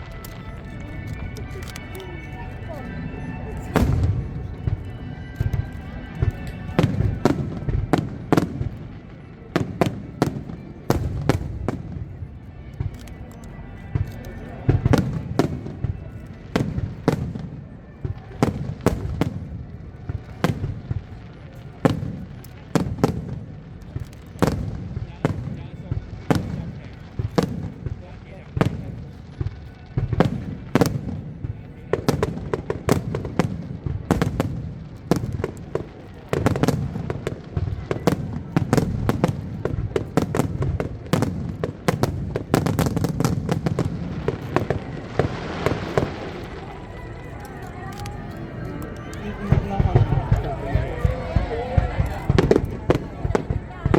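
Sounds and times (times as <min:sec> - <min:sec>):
fireworks bangs: 0:00.0 - 0:53.9
low rumble of bursting shells: 0:32.1 - 0:47.3.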